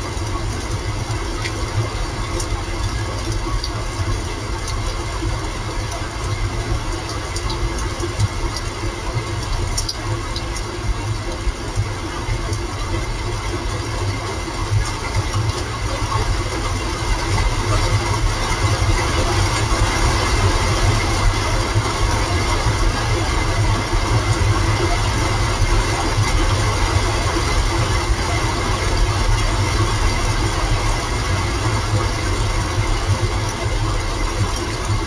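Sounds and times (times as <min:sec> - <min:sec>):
rain hiss: 0:00.0 - 0:35.0
faint ticks: 0:09.4 - 0:10.7.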